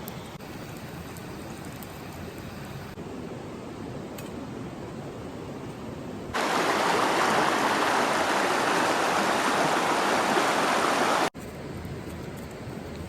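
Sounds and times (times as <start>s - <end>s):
faint hiss: 0.0s - 5.8s
running water rushing: 6.4s - 11.4s.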